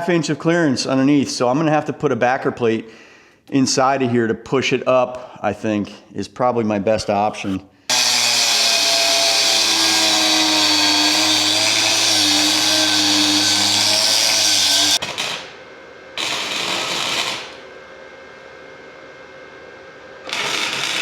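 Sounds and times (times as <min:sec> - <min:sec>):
welder crackling hiss: 0:07.9 - 0:15.5, 0:16.2 - 0:17.6, 0:20.3 - 0:21.0.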